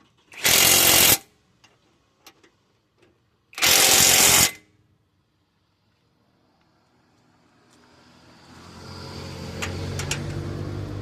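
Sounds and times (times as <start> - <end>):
impact wrench running: 0.3 - 1.3, 3.6 - 4.6.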